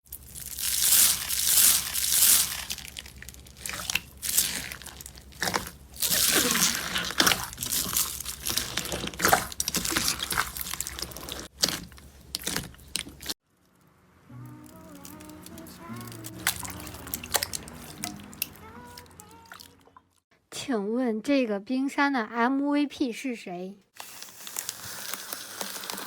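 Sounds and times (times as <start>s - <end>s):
crunchy slime crackling by hand: 0.1s - 13.4s, 14.6s - 19.3s.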